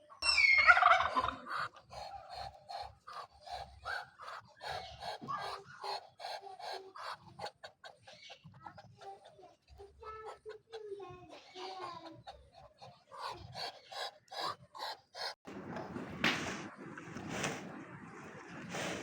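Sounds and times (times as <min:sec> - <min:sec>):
bird squawk: 0:00.2 - 0:02.8.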